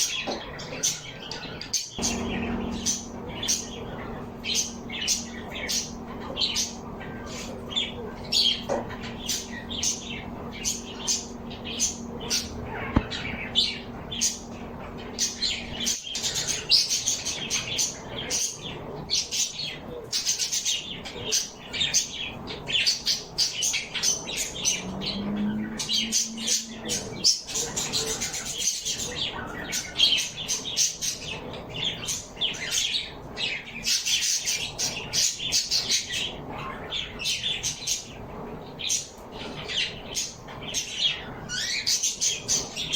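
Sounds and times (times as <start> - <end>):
small birds chirping: 0.0 - 42.9
low hum: 2.0 - 19.0, 24.2 - 28.3.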